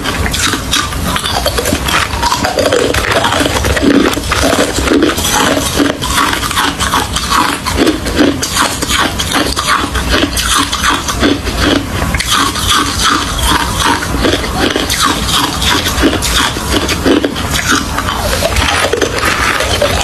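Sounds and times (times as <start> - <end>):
ice crunching while chewed: 0.0 - 20.0.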